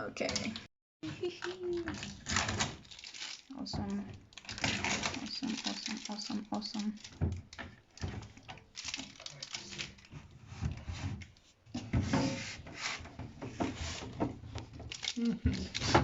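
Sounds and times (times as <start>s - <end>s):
objects rubbing and scraping: 3.5s - 16.0s.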